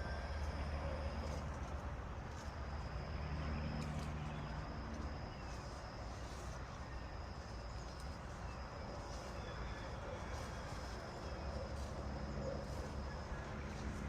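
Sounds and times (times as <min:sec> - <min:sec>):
low outdoor rumble: 0:00.0 - 0:14.0.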